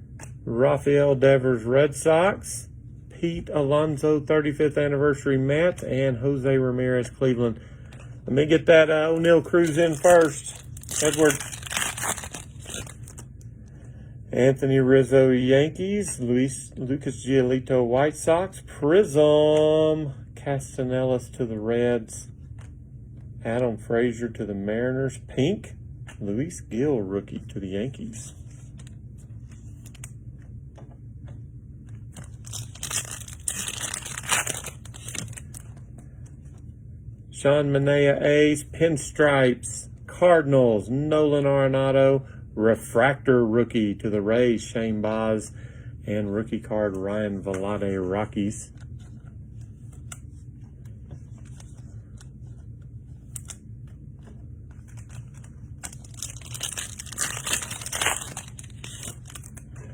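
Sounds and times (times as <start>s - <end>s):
foil wrapper tearing and crinkling: 9.2s - 13.3s, 32.2s - 35.6s, 54.9s - 59.6s.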